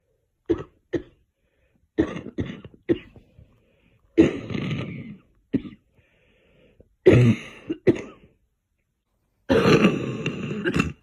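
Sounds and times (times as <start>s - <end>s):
girl coughing: 2.0s - 3.2s, 4.2s - 5.9s, 7.0s - 8.3s, 9.5s - 11.0s.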